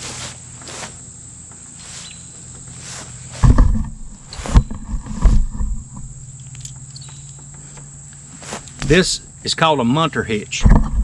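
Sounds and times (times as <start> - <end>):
rope rustling and sliding: 0.0 - 6.2, 8.2 - 9.3
crickets chirping: 0.0 - 11.0
low thumps and rumbling: 3.3 - 6.9, 8.7 - 9.4, 10.6 - 11.0.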